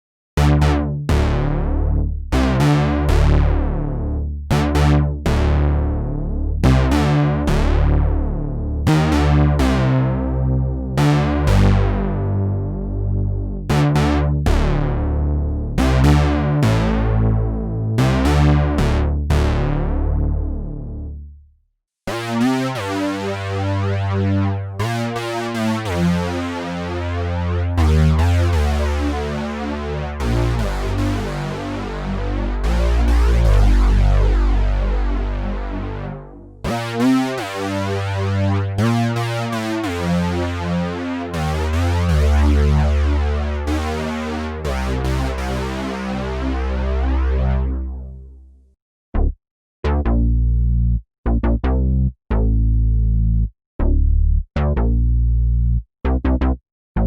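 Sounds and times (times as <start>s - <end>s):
synthesizer plucky chords: 0.4s - 17.4s, 18.0s - 21.1s, 22.1s - 48.2s.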